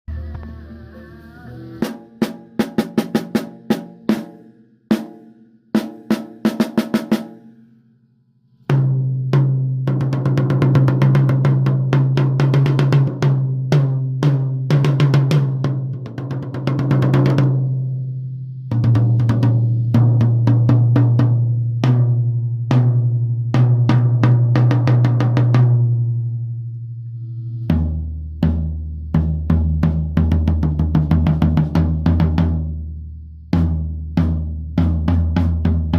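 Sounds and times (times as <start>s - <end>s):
drum hits: 1.8s - 7.5s, 33.6s - 35.9s
drum rolls: 8.7s - 17.6s, 33.6s - 35.9s.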